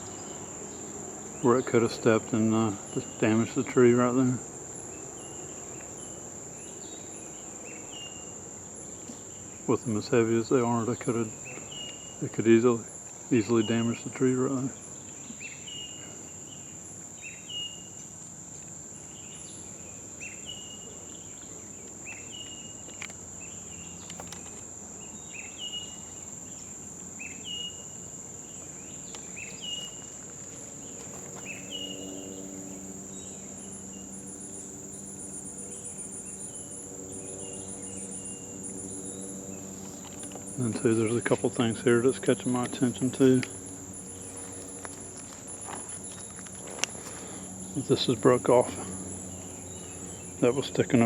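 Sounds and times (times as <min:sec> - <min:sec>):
crickets and insects droning: 0:00.0 - 0:51.0
low steady hum: 0:23.4 - 0:51.0.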